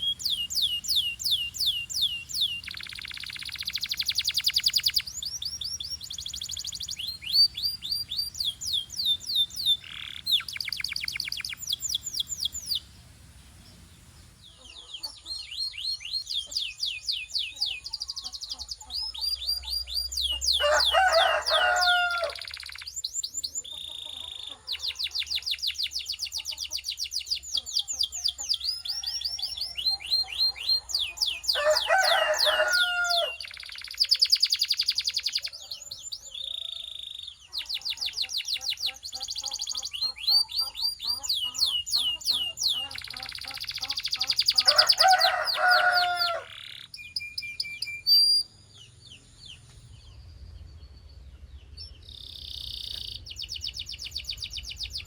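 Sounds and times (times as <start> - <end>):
lower bird call: 0.0 - 26.2
canaries singing trills: 0.0 - 55.0.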